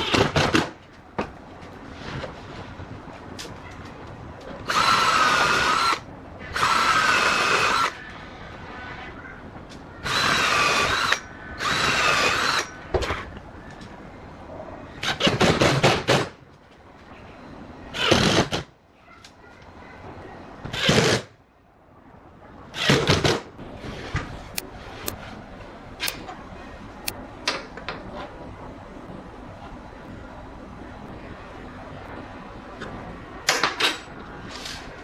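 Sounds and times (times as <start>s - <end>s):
electric drill whining: 4.7s - 8.0s, 10.0s - 12.7s.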